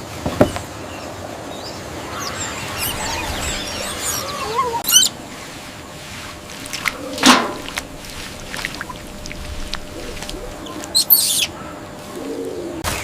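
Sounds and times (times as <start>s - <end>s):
squeaky animal chirps: 2.2s - 5.2s, 10.9s - 11.6s.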